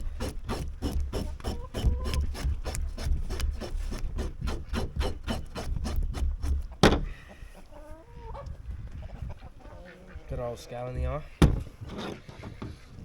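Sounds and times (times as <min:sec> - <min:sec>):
scraping fish scales: 0:00.0 - 0:06.7.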